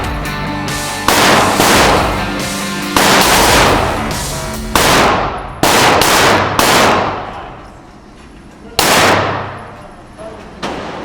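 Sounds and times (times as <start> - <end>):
single gunshots ringing: 1.1 - 2.2, 3.0 - 4.0, 4.7 - 7.6, 8.8 - 9.7.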